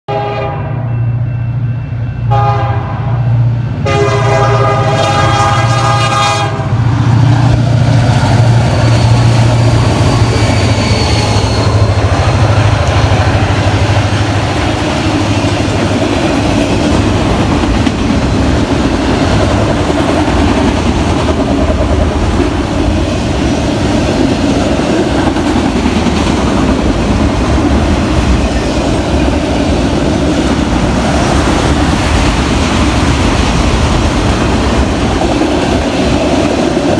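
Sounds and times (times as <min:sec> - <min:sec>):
train horn blasts: 0:00.1 - 0:06.9
freight train rumbling past: 0:00.1 - 0:36.9.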